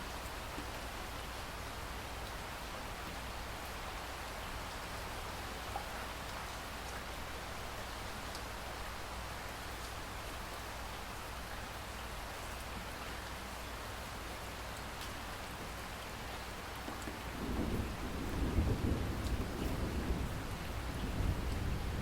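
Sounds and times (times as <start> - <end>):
steady rain falling: 0.0 - 22.0
thunder rumbling: 17.3 - 22.0.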